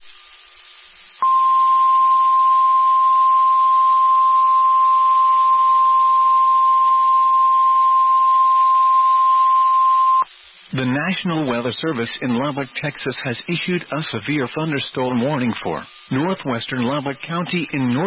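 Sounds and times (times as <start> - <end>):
faint hiss: 0.0 - 4.3, 10.2 - 18.0
steady high alarm tone: 1.2 - 10.2.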